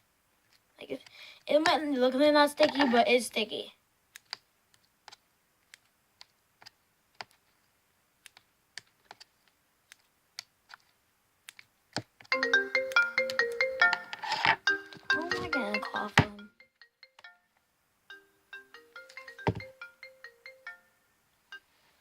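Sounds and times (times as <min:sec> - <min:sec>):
phone ringtone: 0:12.3 - 0:17.5, 0:18.1 - 0:21.8.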